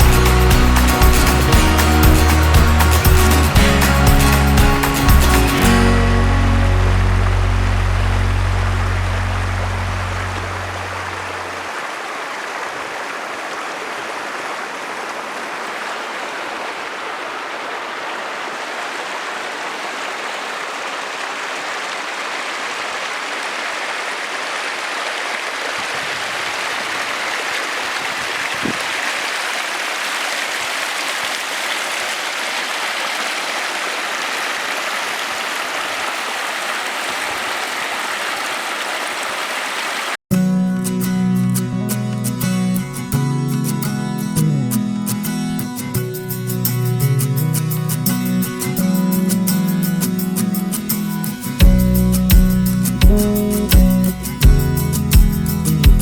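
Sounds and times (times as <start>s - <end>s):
mountain stream rushing: 0.0s - 40.2s.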